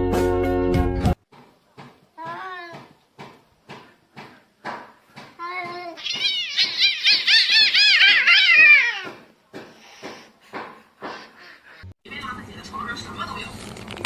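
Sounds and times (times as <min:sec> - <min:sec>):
cat yowling: 0:06.0 - 0:09.2.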